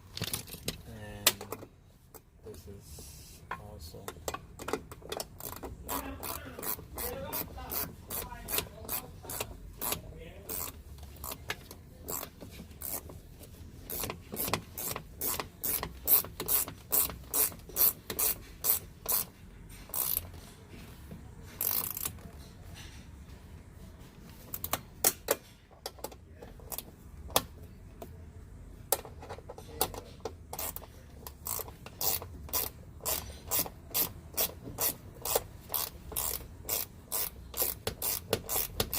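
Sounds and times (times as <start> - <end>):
ratchet wrench clicking: 4.2 - 13.2, 13.8 - 20.4, 21.6 - 22.3, 29.8 - 38.9.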